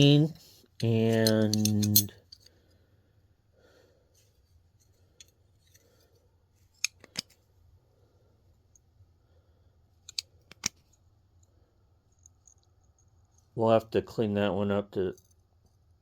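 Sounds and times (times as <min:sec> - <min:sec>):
steel wrenches clinking: 0:00.8 - 0:02.5.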